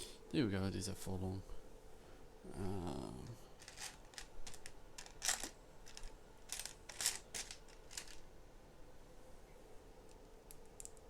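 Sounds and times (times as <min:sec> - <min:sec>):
plastic pieces clicking and rattling: 0:03.6 - 0:08.2, 0:10.5 - 0:11.0.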